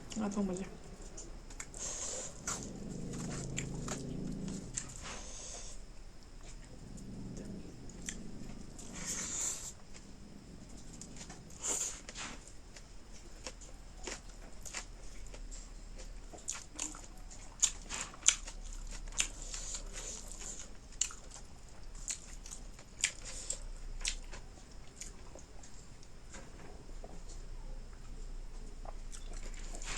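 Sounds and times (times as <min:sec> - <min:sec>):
person chewing: 0:01.0 - 0:05.7, 0:07.8 - 0:25.4, 0:28.8 - 0:29.9.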